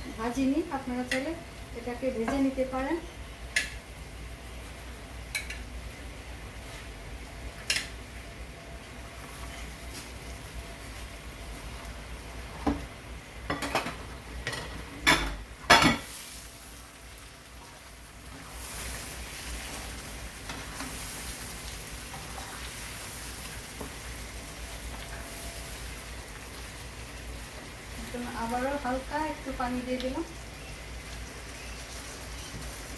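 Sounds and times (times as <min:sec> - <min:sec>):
fish sizzling in oil: 0:15.4 - 0:32.9.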